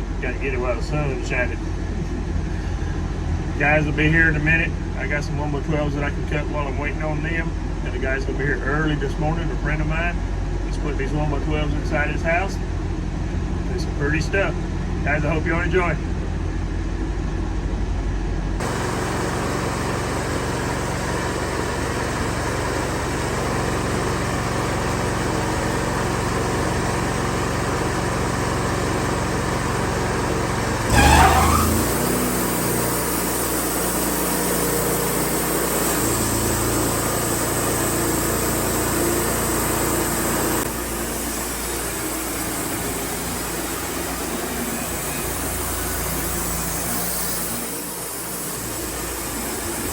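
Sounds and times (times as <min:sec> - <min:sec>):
band sawmill running: 0:00.0 - 0:49.9
brief loud noise: 0:30.9 - 0:32.3.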